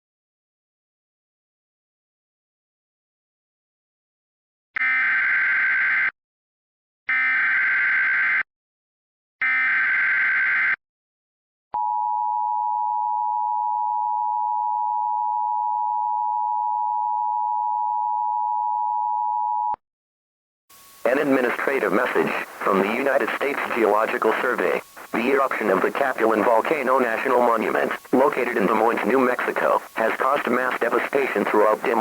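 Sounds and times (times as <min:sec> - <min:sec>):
digital data tone bursts: 0:21.1 - 0:32.0.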